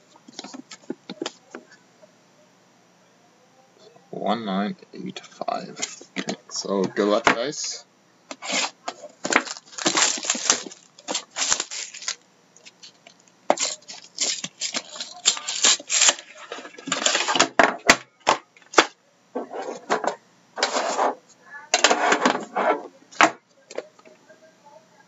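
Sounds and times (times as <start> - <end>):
plastic wrap tearing and crinkling: 8.4 - 17.5.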